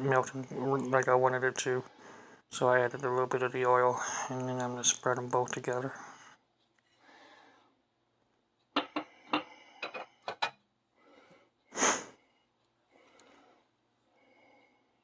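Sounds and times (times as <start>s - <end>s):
person sniffing: 11.7s - 12.2s.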